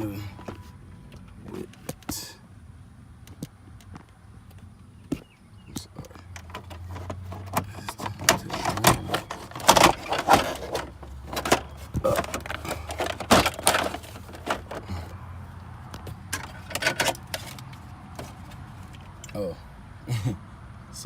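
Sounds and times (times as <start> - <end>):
clicks and rattles of handling: 3.3 - 15.1, 15.9 - 19.4.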